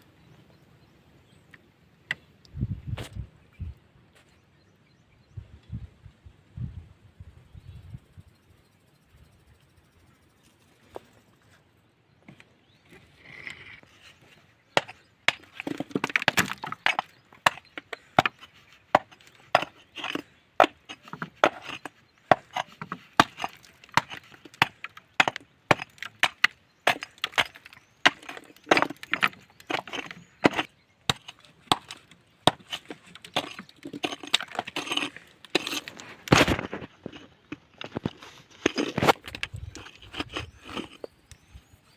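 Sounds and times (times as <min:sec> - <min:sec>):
hand tool knocking rocky ground: 0:14.7 - 0:41.1.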